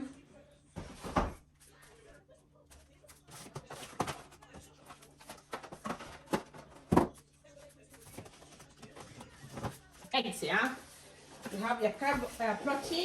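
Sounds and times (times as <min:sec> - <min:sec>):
food containers knocking and clicking: 0:03.3 - 0:07.2.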